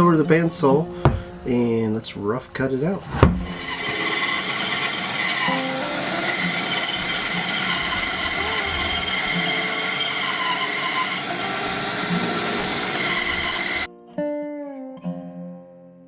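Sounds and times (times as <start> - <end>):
bandsaw cutting wood: 3.0 - 13.9.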